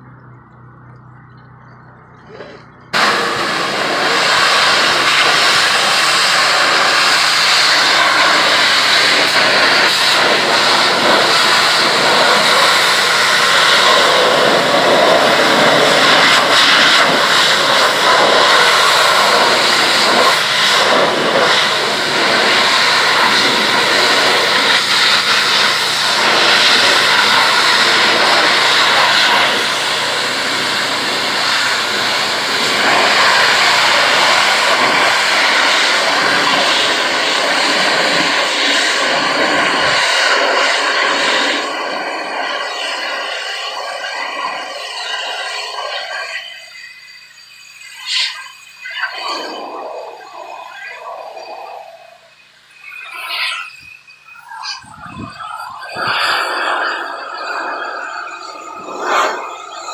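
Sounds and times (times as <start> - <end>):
pressure washer spraying: 2.3 - 59.9.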